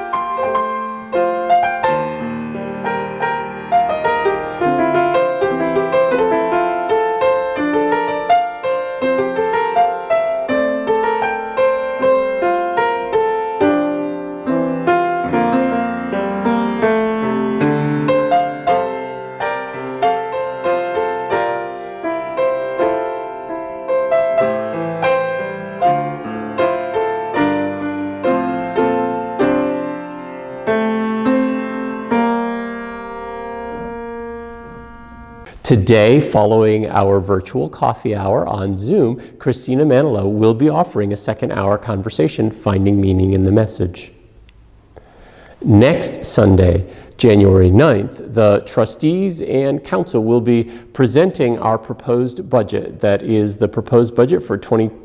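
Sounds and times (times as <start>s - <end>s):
solo piano music: 0.0s - 36.4s.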